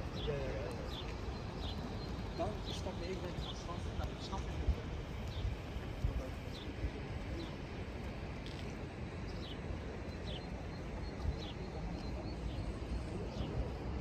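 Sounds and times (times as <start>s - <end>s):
small birds chirping: 0.0s - 4.4s, 9.3s - 13.9s.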